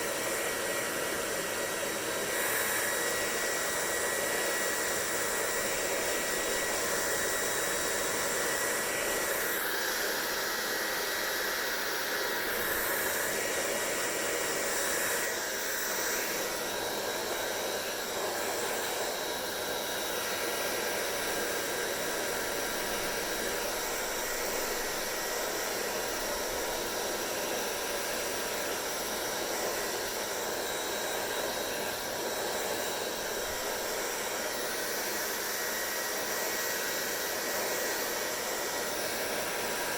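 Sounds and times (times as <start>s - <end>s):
hair dryer blowing: 0.0s - 39.9s.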